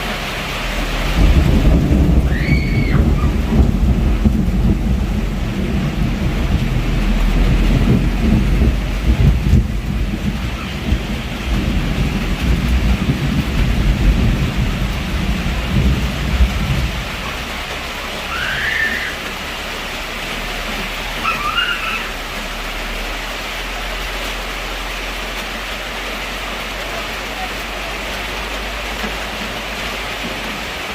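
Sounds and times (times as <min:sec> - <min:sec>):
thunder rumbling: 0:00.0 - 0:23.4
heavy rain falling: 0:00.0 - 0:30.9
short high calls: 0:18.3 - 0:19.2, 0:21.2 - 0:22.2.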